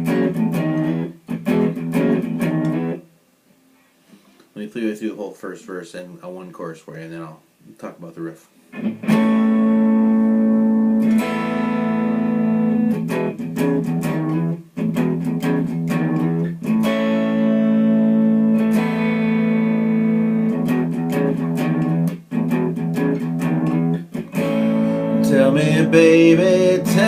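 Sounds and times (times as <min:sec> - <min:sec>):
guitar riff: 0:00.0 - 0:03.1, 0:08.7 - 0:27.0.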